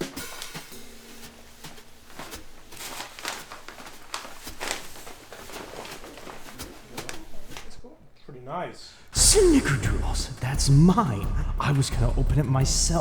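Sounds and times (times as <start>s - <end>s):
wrapping paper tearing: 0.0s - 7.8s.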